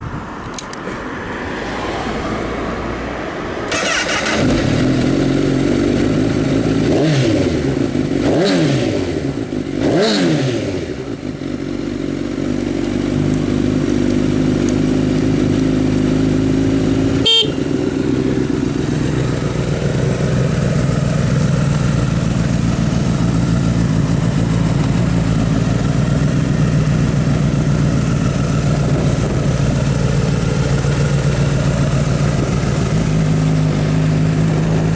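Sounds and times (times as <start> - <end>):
sharp click: 0.4 - 0.9
motorcycle engine revving and idling: 3.7 - 34.9.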